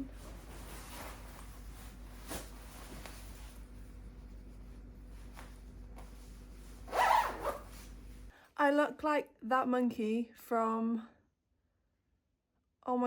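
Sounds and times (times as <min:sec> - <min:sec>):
faint brushing strokes: 0:00.0 - 0:06.9
clothing rustling: 0:00.0 - 0:08.3
low room noise: 0:00.0 - 0:11.2.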